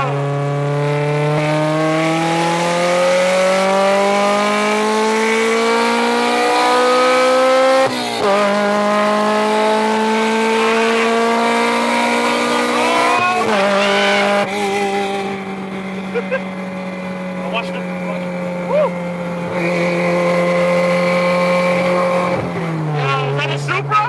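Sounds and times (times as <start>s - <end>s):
car engine at full throttle: 0.0s - 24.0s.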